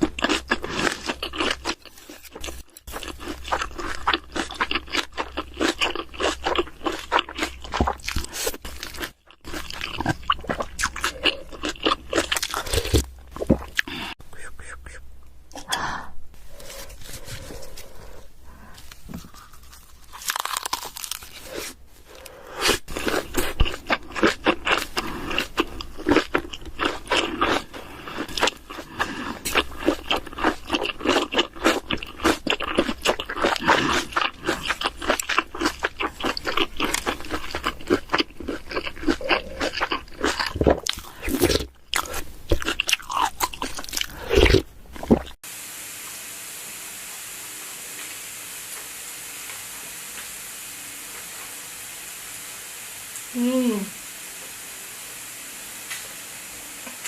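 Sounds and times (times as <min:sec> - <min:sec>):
chewing crunchy food: 0:00.0 - 0:14.2, 0:19.2 - 0:45.4.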